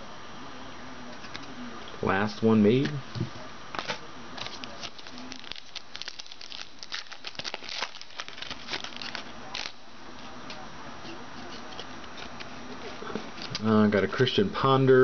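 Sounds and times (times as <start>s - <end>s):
cards clicking and rustling: 3.8s - 9.8s.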